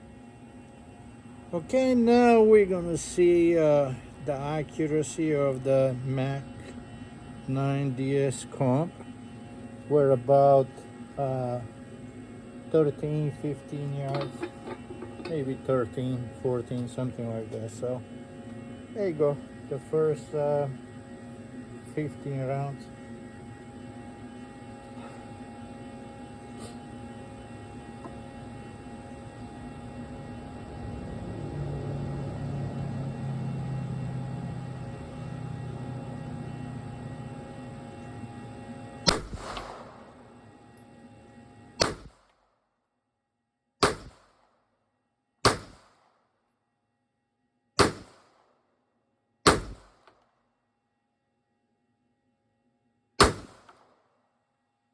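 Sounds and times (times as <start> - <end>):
steady hum with low rumble: 0.0 - 42.8, 43.8 - 48.7, 49.3 - 54.9
pistol shots: 39.1 - 40.0, 41.8 - 42.2, 43.8 - 44.3, 45.4 - 46.0, 47.8 - 48.4, 49.5 - 50.0, 53.2 - 53.9.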